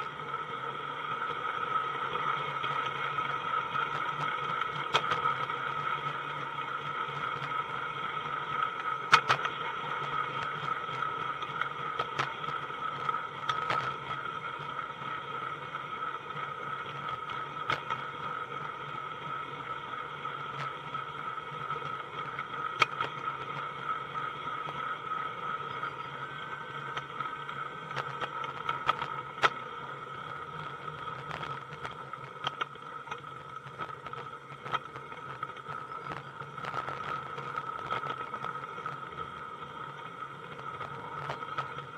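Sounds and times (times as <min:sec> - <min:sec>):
model train whine and hum: 0:00.0 - 0:03.8.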